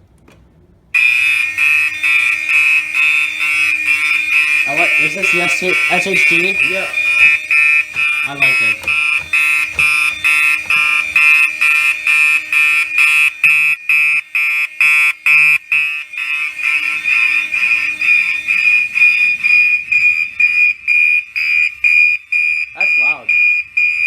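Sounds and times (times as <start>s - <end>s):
fire alarm pulsing high tone: 1.0s - 24.0s.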